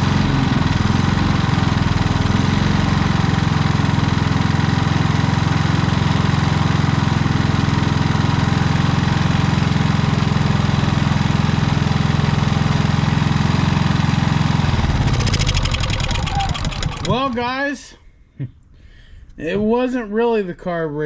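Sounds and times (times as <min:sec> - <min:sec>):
generator engine running steadily: 0:00.0 - 0:17.6.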